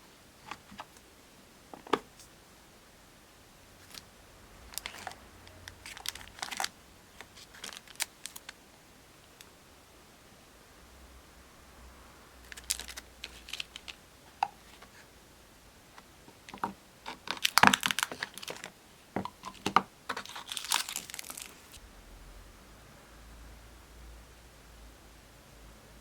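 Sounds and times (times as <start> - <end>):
packaging crinkling and rustling: 4.7 - 8.6, 12.4 - 14.0, 16.4 - 21.8.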